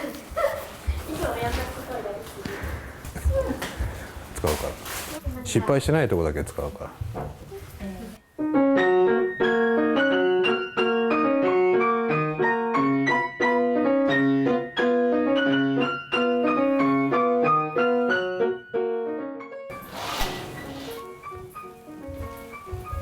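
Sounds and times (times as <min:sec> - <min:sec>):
piano playing: 0:08.2 - 0:23.0
burst of noise: 0:19.8 - 0:21.3.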